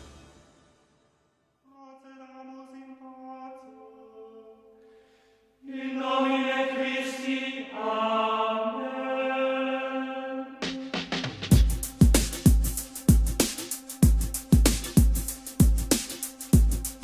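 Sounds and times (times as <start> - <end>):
chant-like held notes music: 5.6 - 17.0.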